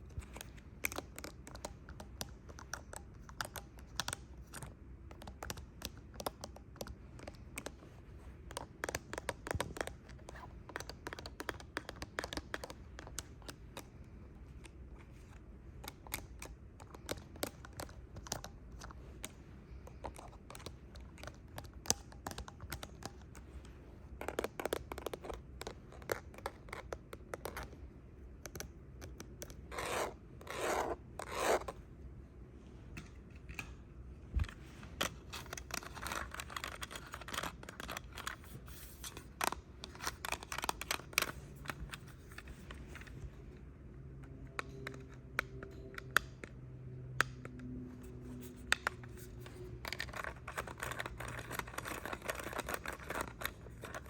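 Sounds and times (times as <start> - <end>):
scratching on handheld device: 29.6 - 31.8, 34.4 - 43.4, 48.0 - 54.0.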